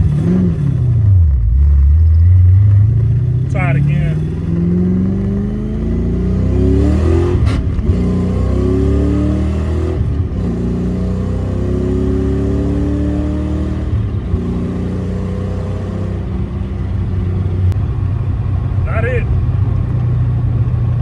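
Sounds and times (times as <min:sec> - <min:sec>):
car accelerating through gears: 0:02.7 - 0:16.6.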